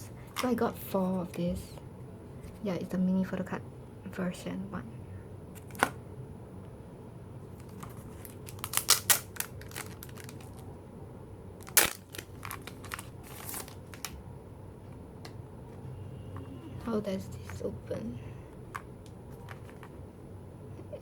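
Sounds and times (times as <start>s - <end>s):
packaging crinkling and clicking: 7.6s - 10.7s, 11.6s - 14.2s, 18.7s - 20.0s.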